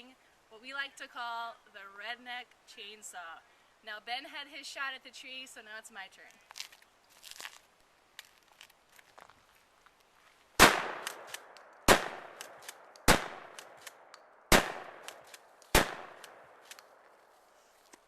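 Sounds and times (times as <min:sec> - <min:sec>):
shotgun blasts with echo: 0:10.6 - 0:17.0.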